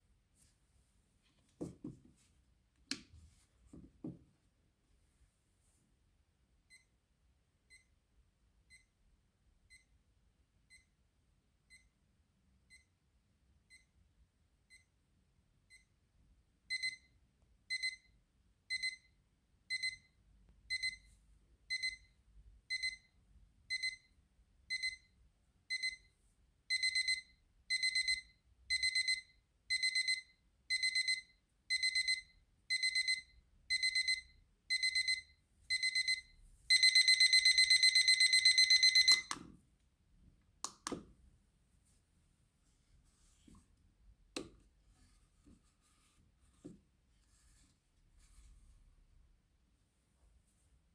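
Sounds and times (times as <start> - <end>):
alarm clock beeping: 16.7 - 17.1, 17.7 - 18.1, 18.7 - 19.1, 19.7 - 20.1, 20.7 - 21.1, 21.7 - 22.1, 22.7 - 23.1, 23.7 - 24.1, 24.7 - 25.1, 25.7 - 26.1, 26.7 - 39.4.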